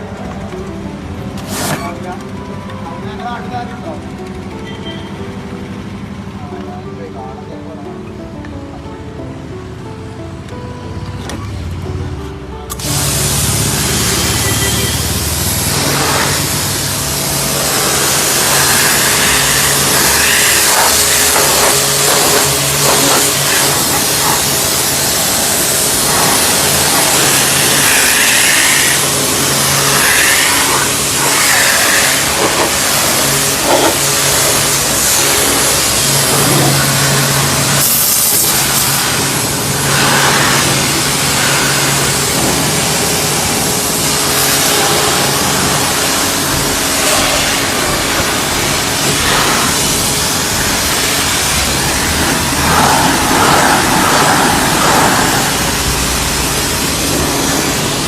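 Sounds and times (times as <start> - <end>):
pressure washer motor hum: 0.0 - 7.3, 12.6 - 58.0
water jet hissing: 12.7 - 58.0.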